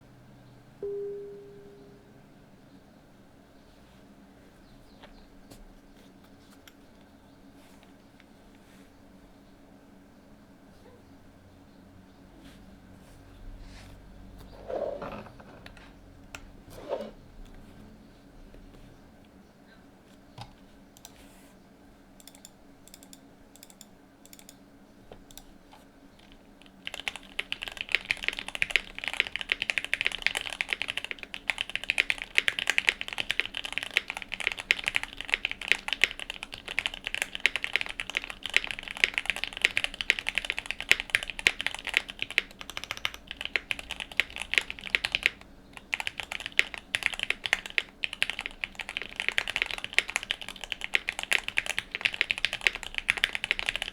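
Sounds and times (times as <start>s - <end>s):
typing on mechanical keyboard: 26.2s - 53.9s.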